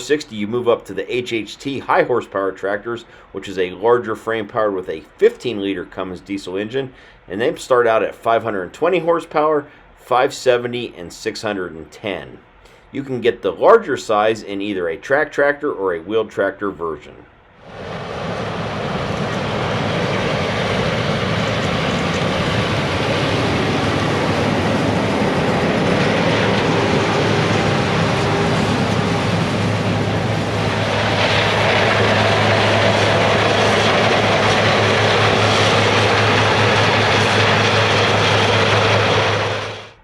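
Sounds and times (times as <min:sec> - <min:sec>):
diesel farm machinery running: 0:17.6 - 0:40.0.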